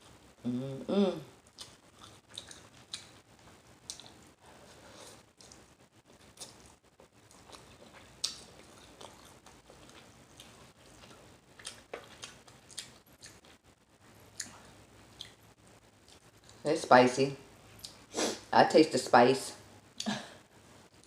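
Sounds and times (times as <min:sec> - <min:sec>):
person chewing with smacking: 0:01.4 - 0:13.6, 0:14.3 - 0:16.6.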